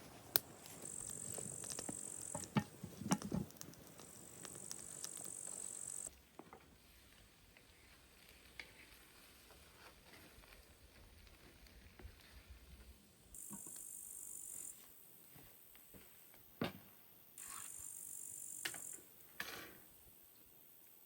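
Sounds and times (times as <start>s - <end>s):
insect trilling buzz: 0.4s - 6.1s, 13.4s - 14.9s, 17.4s - 19.0s.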